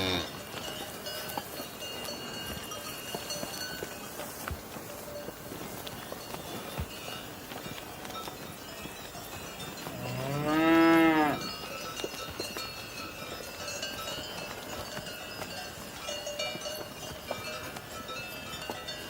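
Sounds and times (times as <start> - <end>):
cow mooing: 0.0 - 0.3, 10.0 - 11.5
faint bell-like ringing: 0.0 - 19.0.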